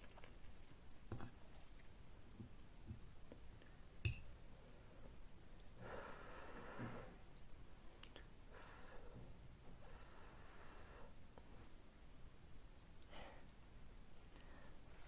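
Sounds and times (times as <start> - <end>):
soft breathy sound: 4.5 - 7.3, 8.1 - 11.8, 13.0 - 15.0.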